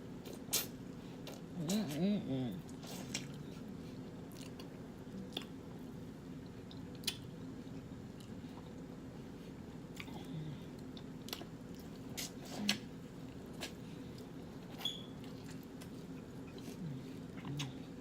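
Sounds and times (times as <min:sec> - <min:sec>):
person chewing: 0:00.1 - 0:02.0, 0:02.6 - 0:18.0.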